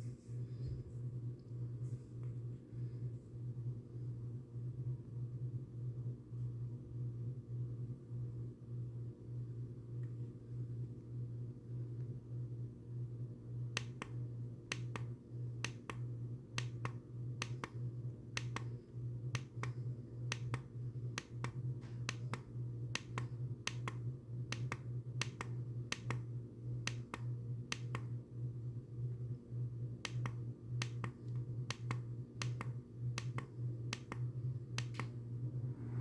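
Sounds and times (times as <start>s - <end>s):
steady low hum: 0.0s - 36.0s
sharp irregular clicks: 16.6s - 17.8s, 18.4s - 18.7s, 19.4s - 26.2s, 26.9s - 28.1s, 30.1s - 34.2s, 34.8s - 35.1s.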